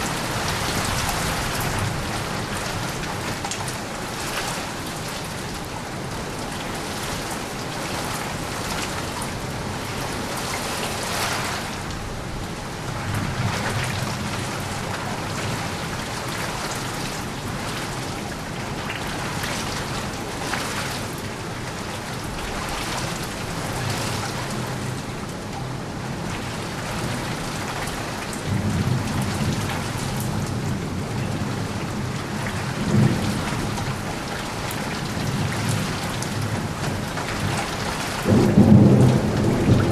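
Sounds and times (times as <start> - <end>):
heavy rain falling: 0.0 - 39.9
thunder rumbling: 35.1 - 39.9
thunder crack: 38.2 - 39.9.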